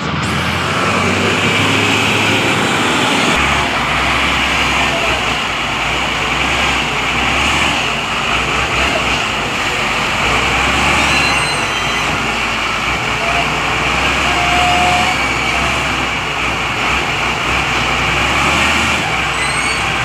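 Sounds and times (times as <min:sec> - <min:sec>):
constant wash of noise: 0:00.0 - 0:07.1
heavy vehicle engine drone: 0:00.0 - 0:20.0.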